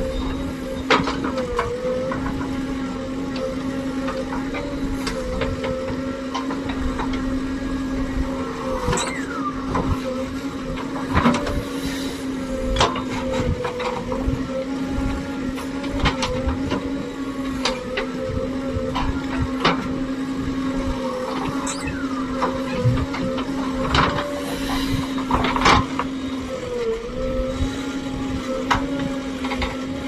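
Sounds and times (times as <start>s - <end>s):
diesel engine running: 0.0s - 30.0s
short falling squeak: 8.9s - 9.5s, 21.5s - 22.9s.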